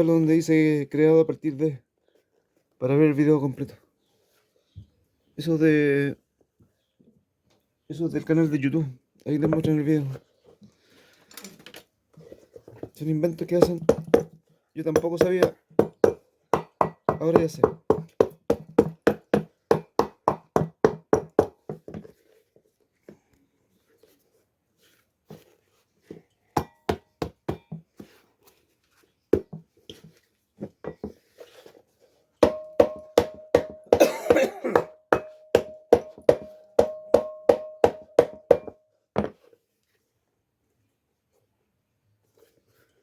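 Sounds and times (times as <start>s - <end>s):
hammer tapping on shoe: 14.9s - 22.0s, 32.4s - 34.1s, 34.8s - 39.3s.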